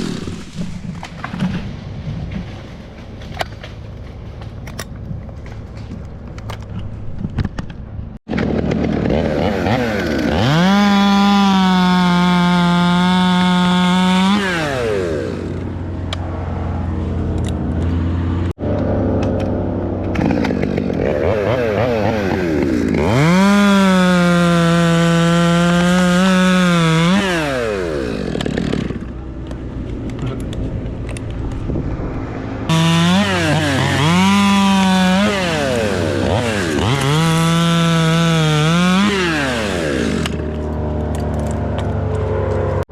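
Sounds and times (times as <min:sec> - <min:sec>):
chainsaw revving: 0:00.0 - 0:00.7, 0:08.3 - 0:15.8, 0:20.0 - 0:29.2, 0:32.7 - 0:40.8.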